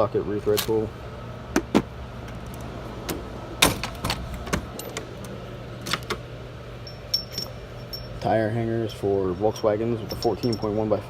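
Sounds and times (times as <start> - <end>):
steady low hum: 0.0 - 11.0
tools shifting: 2.3 - 6.2, 6.8 - 8.4, 10.0 - 11.0.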